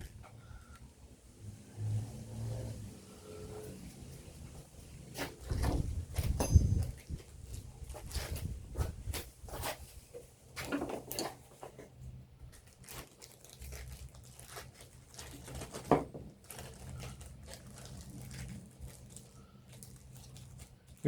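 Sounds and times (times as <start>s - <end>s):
small parts clicking and rustling: 5.4s - 8.5s, 10.5s - 21.0s.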